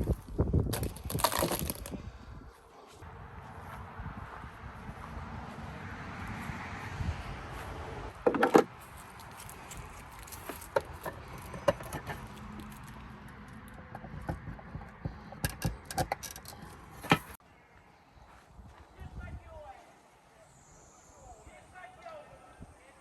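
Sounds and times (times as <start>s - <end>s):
small hard objects clinking: 0.7s - 2.0s, 8.9s - 13.8s.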